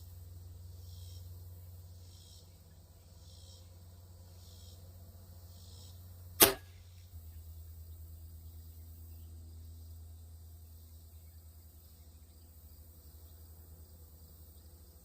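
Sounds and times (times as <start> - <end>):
faint insects pulsing: 0.0 - 15.0
pellet gun shot: 6.4 - 6.8.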